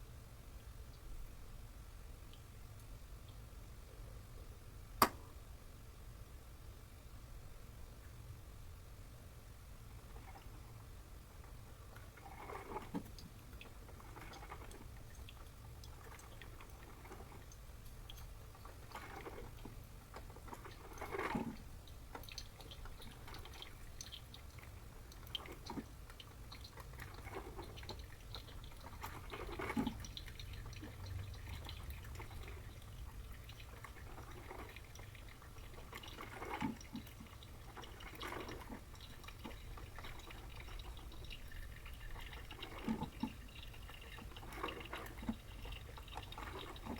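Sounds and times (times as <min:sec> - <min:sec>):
water dripping and gurgling: 0:09.9 - 0:46.9
coffee maker humming: 0:18.2 - 0:46.9.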